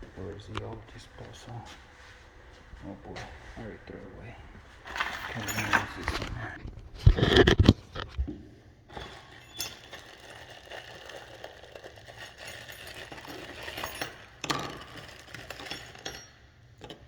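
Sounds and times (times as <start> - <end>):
drain pipe parts rattling: 4.7 - 8.2, 8.9 - 17.0.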